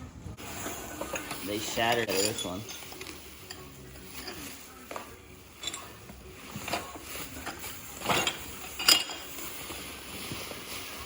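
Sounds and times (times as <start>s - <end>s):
handling noise: 0.4s - 11.0s
sharp glass clinks: 1.9s - 2.8s.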